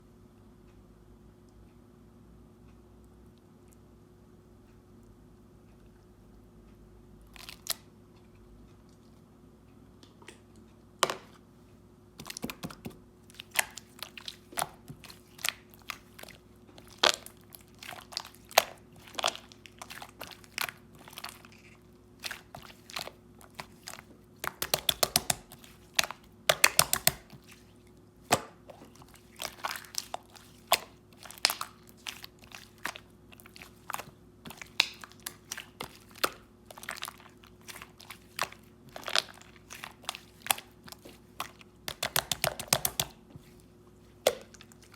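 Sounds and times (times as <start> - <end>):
slime squished with sticky pops: 12.2 - 43.3.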